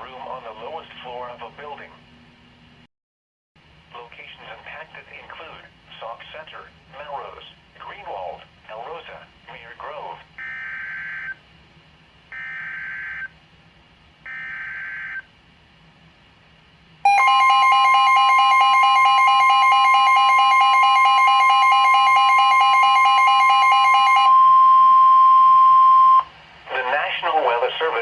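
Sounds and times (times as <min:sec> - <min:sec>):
loud steady alarm tone: 0:12.3 - 0:13.3, 0:14.3 - 0:15.3, 0:17.0 - 0:26.3
lower alarm tone: 0:17.1 - 0:26.3.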